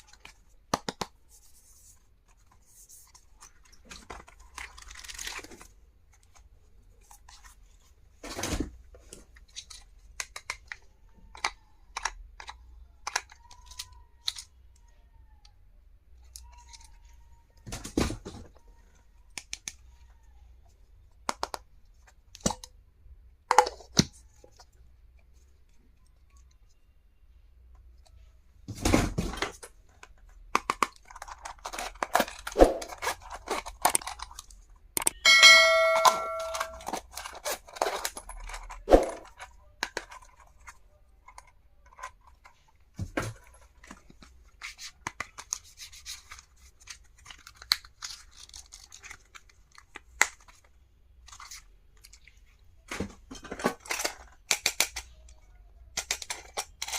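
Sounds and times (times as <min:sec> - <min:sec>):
packaging rustling and tearing: 0:03.0 - 0:05.8, 0:30.7 - 0:34.6, 0:36.8 - 0:42.7, 0:43.7 - 0:50.6.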